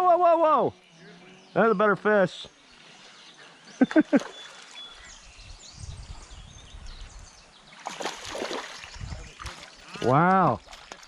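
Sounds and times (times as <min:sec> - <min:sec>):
bird chirps: 0:00.0 - 0:11.0
running water: 0:07.7 - 0:11.0
fish splashing: 0:07.8 - 0:10.1.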